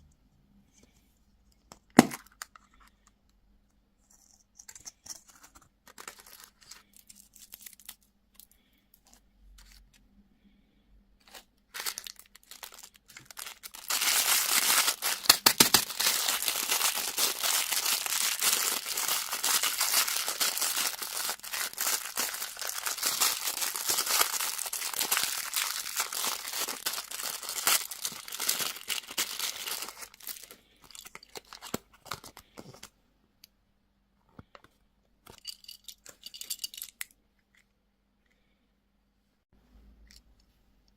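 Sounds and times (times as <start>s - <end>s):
candy wrapper crinkling and tearing: 4.7s - 8.8s, 11.2s - 32.9s.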